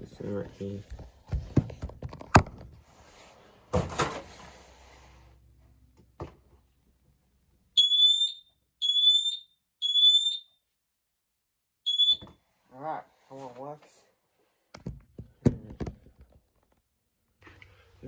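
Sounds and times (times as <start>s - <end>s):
smoke alarm beeping: 7.8s - 10.6s, 11.8s - 12.4s.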